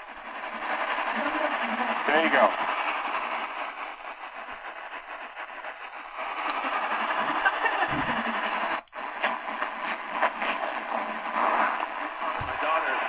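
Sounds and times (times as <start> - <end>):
faint weak radio station: 0.0 - 13.0
radio static and hiss: 0.0 - 13.0.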